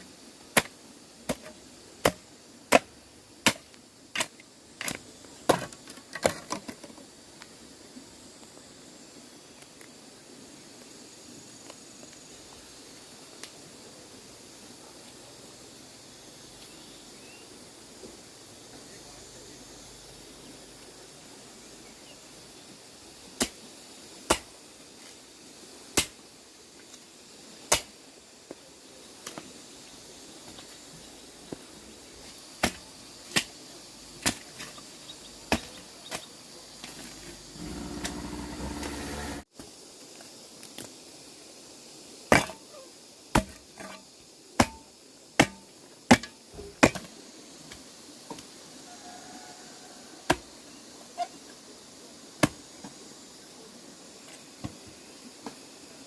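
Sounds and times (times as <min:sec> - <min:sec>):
brief steady hum: 0:37.6 - 0:39.4.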